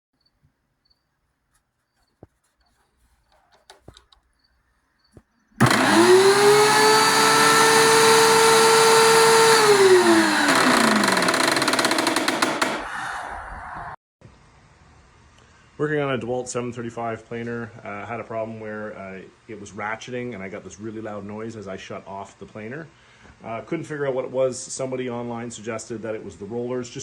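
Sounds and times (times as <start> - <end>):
thickness planer running: 5.6 - 12.8.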